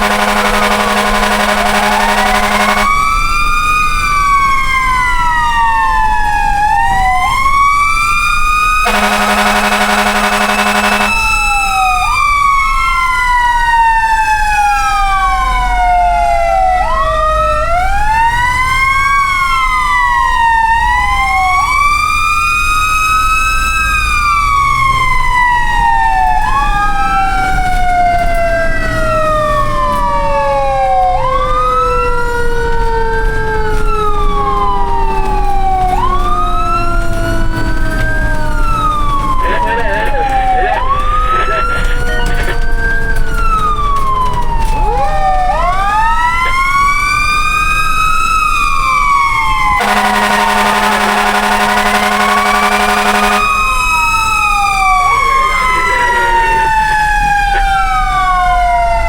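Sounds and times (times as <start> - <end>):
horn blast: 0.0 - 3.2, 8.8 - 12.2, 49.7 - 55.8
fire truck sirens wailing: 0.0 - 59.0.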